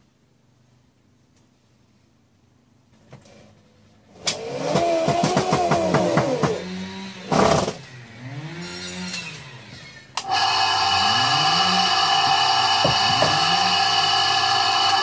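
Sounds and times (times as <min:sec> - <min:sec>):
motor whining: 0:05.8 - 0:15.0
loud burst of noise: 0:10.2 - 0:15.0.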